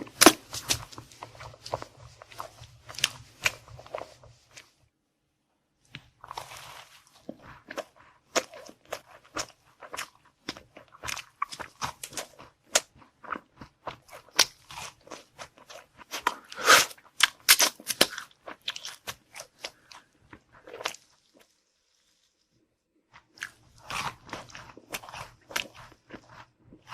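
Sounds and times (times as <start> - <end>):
crunching and chewing: 0.0 - 4.7, 5.9 - 22.3, 23.1 - 26.9.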